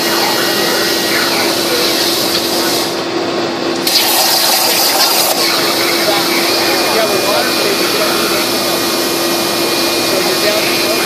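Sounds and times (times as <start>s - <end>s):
plasma torch hissing: 3.8s - 8.6s.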